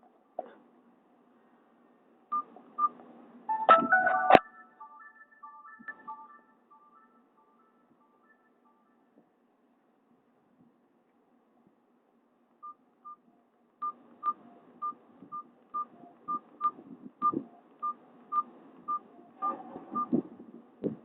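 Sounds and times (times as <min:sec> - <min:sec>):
phone keypad beeps: 0:13.8 - 0:20.2.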